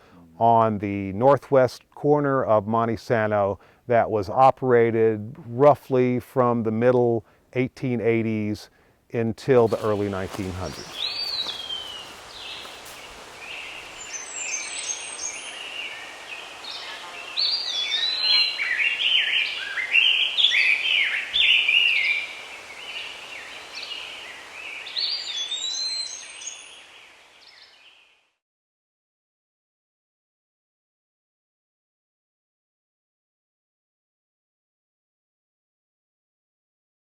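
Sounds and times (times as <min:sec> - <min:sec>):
songbirds singing: 0:09.6 - 0:28.2.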